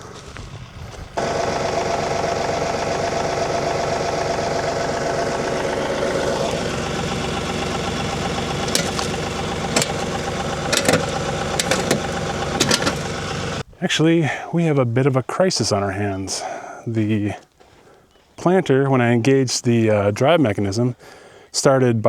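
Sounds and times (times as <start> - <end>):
tractor engine running: 0.0 - 13.6
planter mechanism knocking and clanking: 6.3 - 13.6.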